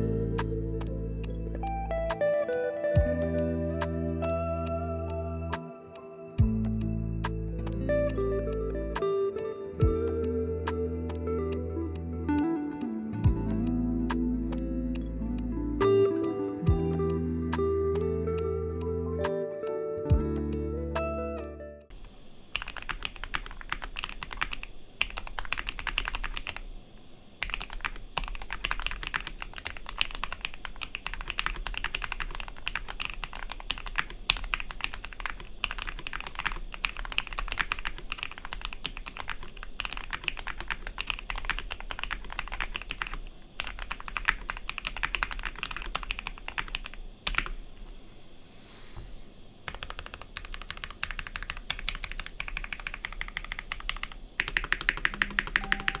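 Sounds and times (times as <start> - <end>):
mechanical keyboard typing: 22.5 - 26.7, 27.4 - 47.6, 49.7 - 56.0.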